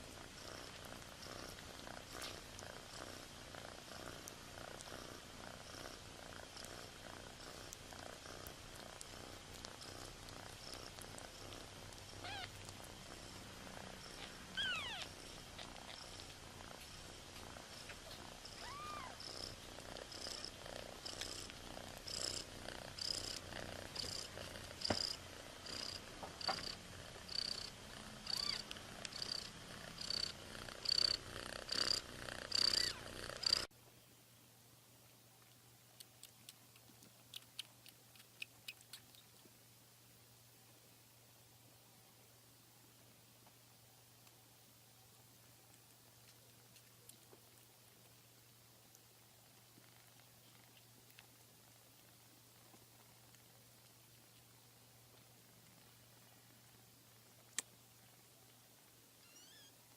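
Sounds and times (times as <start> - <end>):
cat purring: 0.0 - 33.7, 42.0 - 59.9
kitten squeaks: 12.2 - 12.6, 14.5 - 15.1, 18.6 - 19.2, 28.3 - 28.7, 32.6 - 33.6, 59.2 - 59.8.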